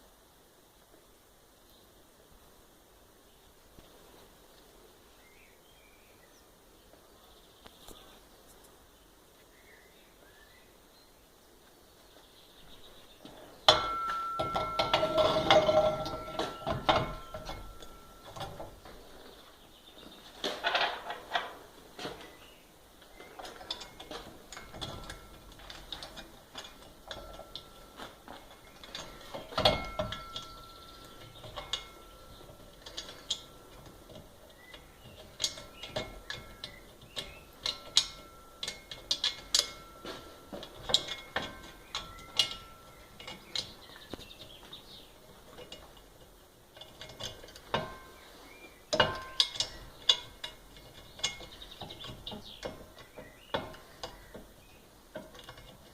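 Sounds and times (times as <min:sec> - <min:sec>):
small metal parts clinking: 0:13.7 - 0:19.2, 0:23.0 - 0:55.9.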